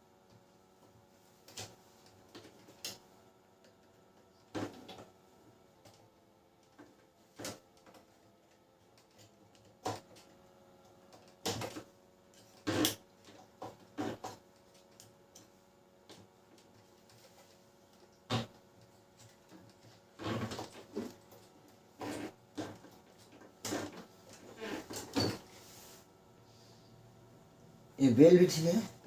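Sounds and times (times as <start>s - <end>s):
faint steady hum: 0.0s - 29.0s.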